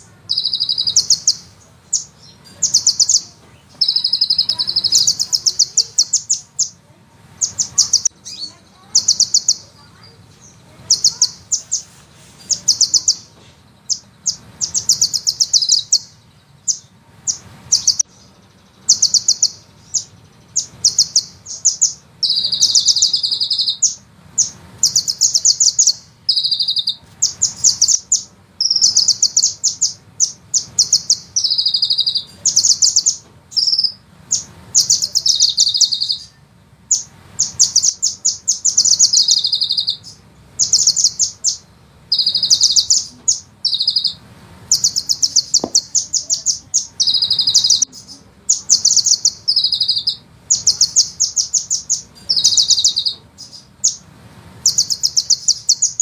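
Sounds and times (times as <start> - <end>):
sunbird rattling trills: 0.0 - 56.0.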